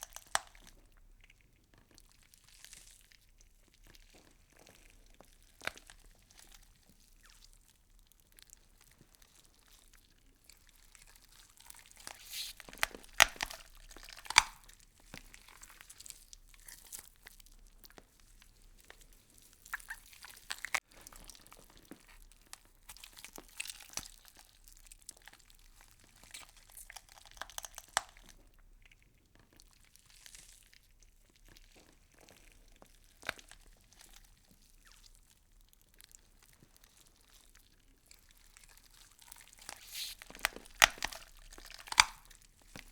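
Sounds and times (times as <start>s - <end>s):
insects chewing leaves: 11.7s - 14.7s, 39.1s - 42.9s.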